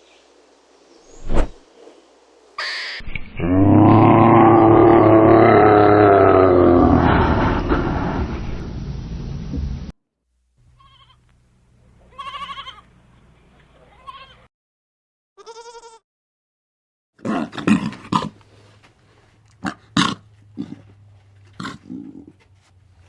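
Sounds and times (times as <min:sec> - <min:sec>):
bleat-like animal calls: 0:10.8 - 0:11.2, 0:12.1 - 0:12.9, 0:13.9 - 0:14.5, 0:15.4 - 0:16.0.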